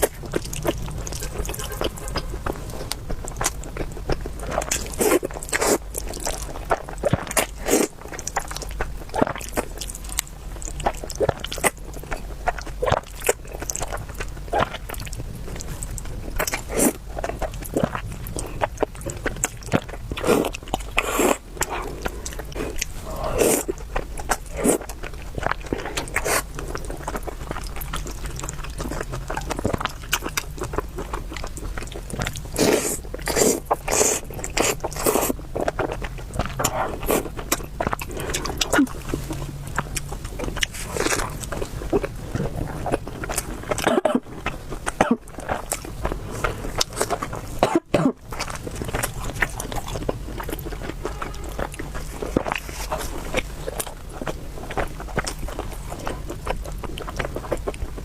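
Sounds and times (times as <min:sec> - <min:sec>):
wet chewing and mouth smacks: 0:00.0 - 0:58.0.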